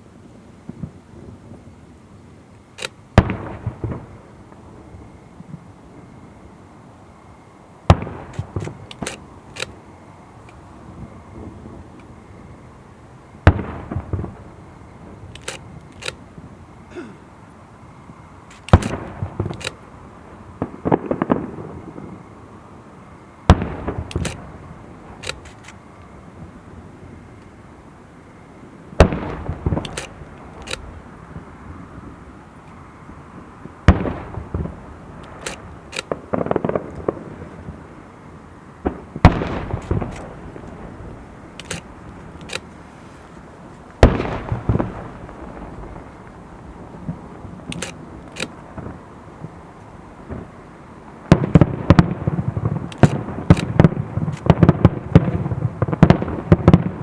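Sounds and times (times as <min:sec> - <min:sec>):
crackling firework pops: 0:00.6 - 0:01.7, 0:02.6 - 0:04.7, 0:07.9 - 0:09.8, 0:13.4 - 0:16.5, 0:18.1 - 0:22.3, 0:23.5 - 0:26.2, 0:29.0 - 0:31.5, 0:33.4 - 0:37.9, 0:38.8 - 0:57.0
firework shells bursting: 0:07.8 - 0:12.4, 0:17.9 - 0:22.2, 0:23.5 - 0:26.2, 0:28.9 - 0:31.6, 0:33.4 - 0:37.9, 0:38.8 - 0:57.0.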